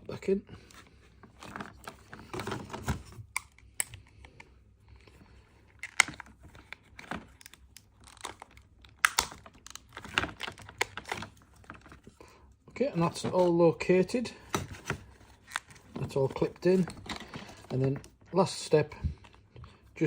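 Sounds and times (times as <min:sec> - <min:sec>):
soft plastic rubbing: 0:00.6 - 0:03.4, 0:14.3 - 0:20.0.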